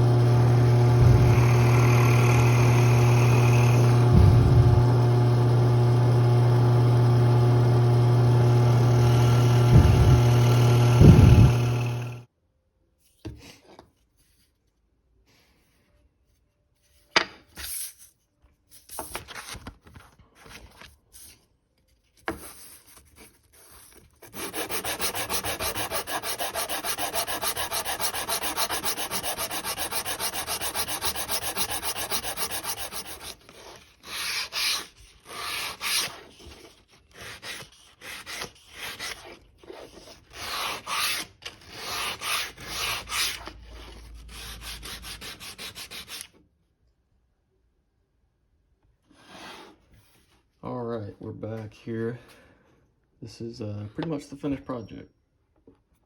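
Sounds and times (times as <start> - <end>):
sanding wood block: 0.0 - 5.0, 8.3 - 12.2, 24.2 - 41.2, 44.4 - 46.3.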